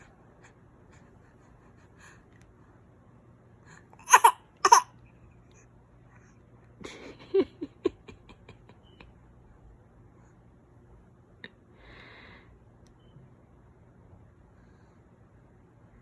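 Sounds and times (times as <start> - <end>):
baby coughing: 4.0 - 4.9
baby laughing: 4.1 - 4.8.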